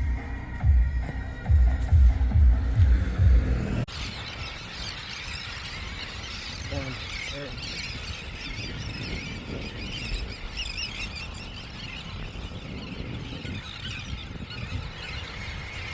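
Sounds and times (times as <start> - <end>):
steady low rumble: 0.0 - 4.0
birds chirping and warbling: 0.0 - 15.9.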